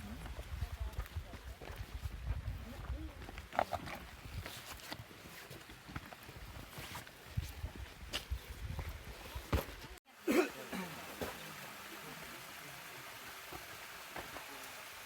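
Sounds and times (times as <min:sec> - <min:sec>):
footstep-like thumps: 0:07.4 - 0:10.0.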